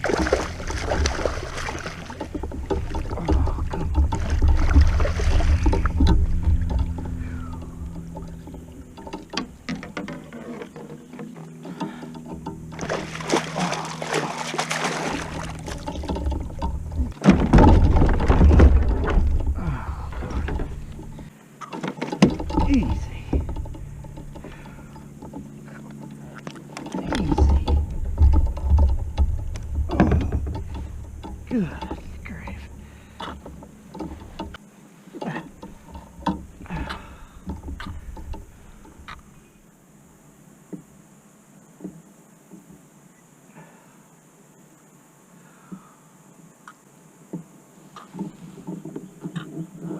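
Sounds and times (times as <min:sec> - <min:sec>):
heavy low rumble: 0:00.0 - 0:10.0, 0:15.1 - 0:21.3, 0:27.0 - 0:33.5
knocks and handling noise: 0:00.0 - 0:39.4
water splashing around kayak: 0:00.0 - 0:43.0.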